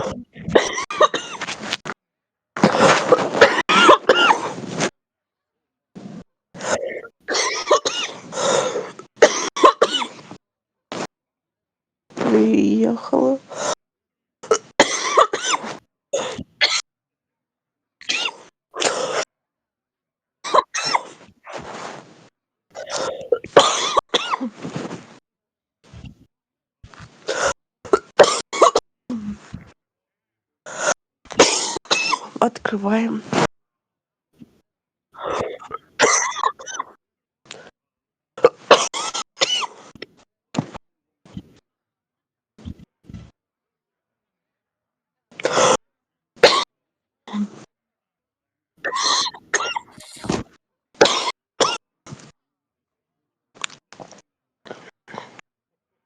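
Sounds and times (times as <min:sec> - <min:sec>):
person coughing: 0:00.0 - 0:01.5, 0:02.7 - 0:04.6, 0:06.9 - 0:10.2, 0:22.9 - 0:24.6, 0:35.3 - 0:37.0
chesty cough: 0:00.0 - 0:01.6, 0:02.6 - 0:04.6, 0:06.7 - 0:10.2, 0:14.4 - 0:16.9, 0:18.0 - 0:19.3, 0:22.8 - 0:24.6, 0:27.9 - 0:28.9, 0:31.3 - 0:32.4, 0:35.2 - 0:37.0, 0:38.4 - 0:39.9, 0:46.4 - 0:46.7, 0:48.8 - 0:50.4, 0:51.0 - 0:51.9.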